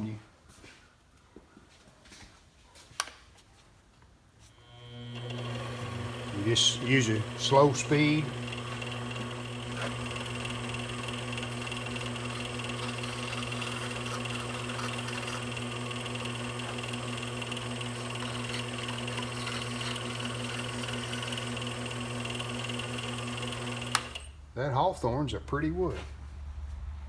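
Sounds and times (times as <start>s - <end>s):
wood lathe motor running: 4.6s - 24.4s.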